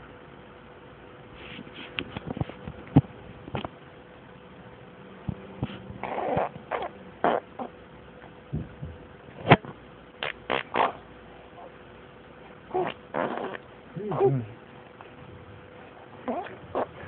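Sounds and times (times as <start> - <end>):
lip raspberries: 10.2 - 11.8, 12.7 - 15.2, 16.0 - 17.0.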